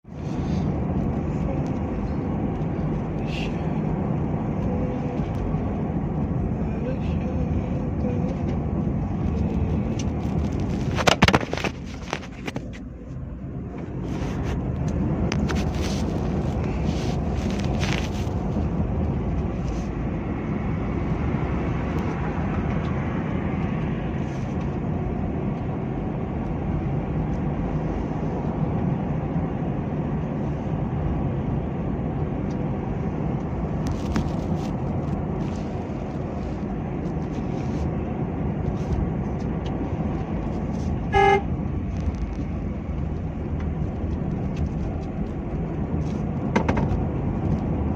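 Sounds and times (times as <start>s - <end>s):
vehicle engine and tyre noise: 0.0s - 47.9s
car horn honk: 41.1s - 41.5s.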